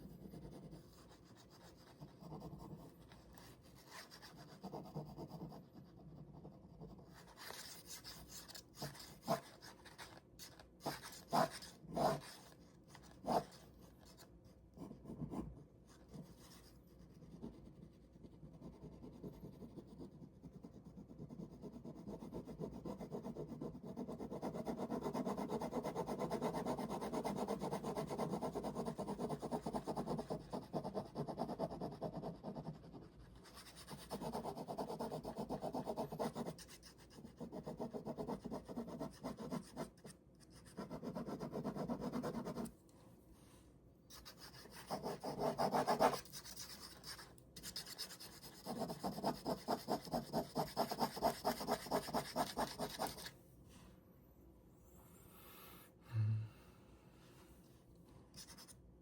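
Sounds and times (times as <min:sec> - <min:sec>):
ballpoint pen scratching on paper: 0:00.0 - 0:42.8, 0:44.1 - 0:53.4, 0:58.4 - 0:58.8.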